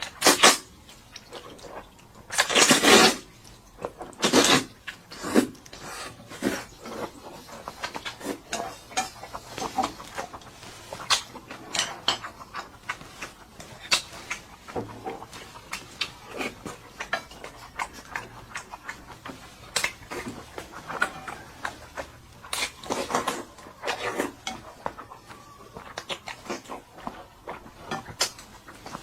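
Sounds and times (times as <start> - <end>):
chewing and mouth smacks: 0.0 - 29.0
utensils and dishes clicking: 6.8 - 29.0.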